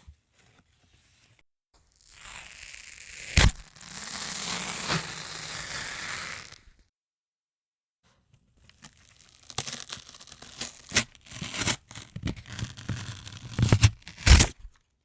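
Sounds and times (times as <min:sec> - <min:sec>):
material ripping and tearing: 0:01.9 - 0:06.8, 0:08.7 - 0:14.7.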